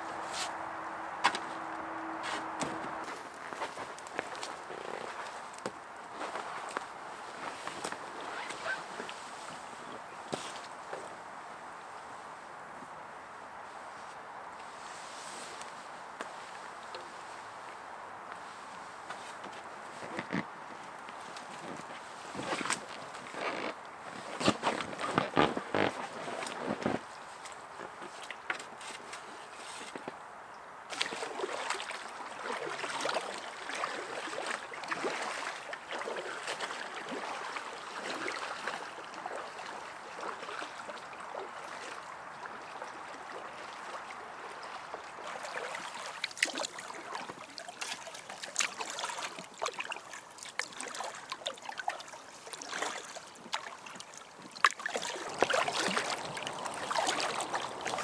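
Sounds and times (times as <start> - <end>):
water trickling around raft: 0.0 - 58.0
sharp water splashes: 42.7 - 58.0.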